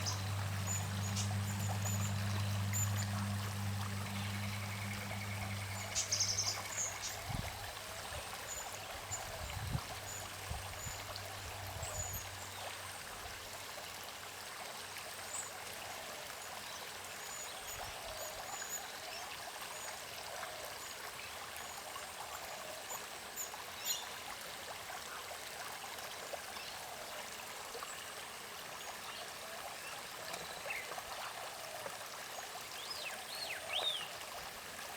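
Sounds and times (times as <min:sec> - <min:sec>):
small birds chirping: 0:00.0 - 0:07.5
low hum: 0:00.0 - 0:07.7
creek water trickling: 0:00.0 - 0:34.9.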